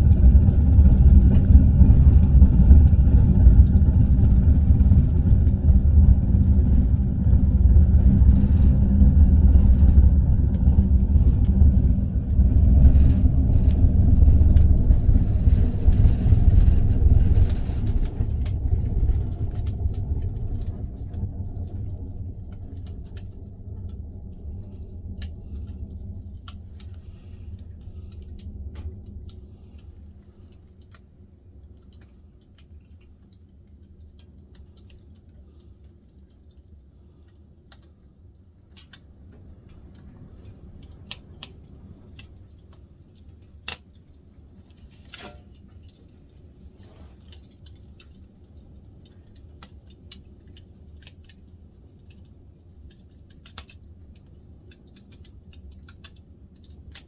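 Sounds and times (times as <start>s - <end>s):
low fire rumble: 0.0s - 57.0s
wood fire crackling: 0.0s - 57.0s.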